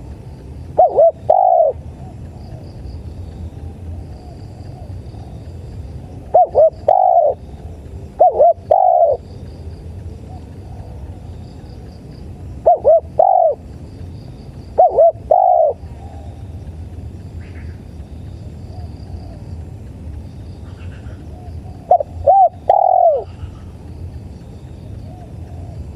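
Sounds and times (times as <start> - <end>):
dove cooing: 0.0 - 2.8, 3.6 - 9.3, 10.1 - 13.8, 14.7 - 16.6, 20.7 - 23.9, 24.8 - 25.9
crickets chirping faintly: 0.0 - 25.9.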